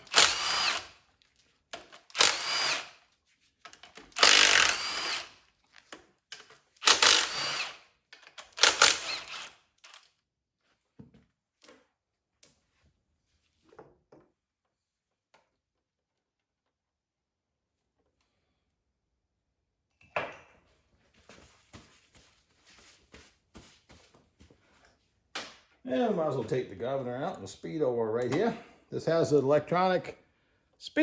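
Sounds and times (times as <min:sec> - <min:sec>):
power gun whining: 0:00.0 - 0:00.9, 0:02.0 - 0:03.0, 0:04.1 - 0:05.4, 0:06.8 - 0:07.8, 0:08.4 - 0:10.0.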